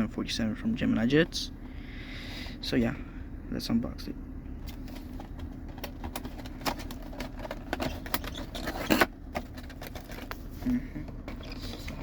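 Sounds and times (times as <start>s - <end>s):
steady low hum: 0.0s - 12.0s
cardboard packaging clicks and crinkles: 4.6s - 12.0s.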